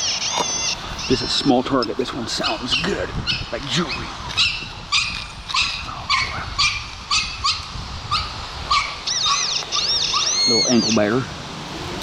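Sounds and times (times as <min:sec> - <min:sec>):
small dog yapping: 0:04.3 - 0:11.0.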